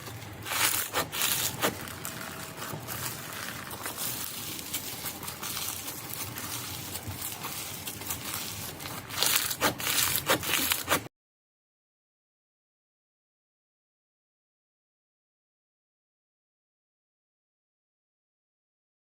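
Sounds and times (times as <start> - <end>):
slime crackling when squeezed: 0.0 - 11.0.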